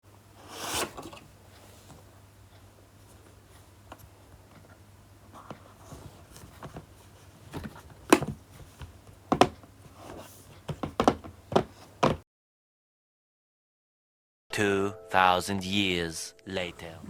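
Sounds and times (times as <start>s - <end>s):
taps and knocks on cardboard box: 5.4s - 12.2s.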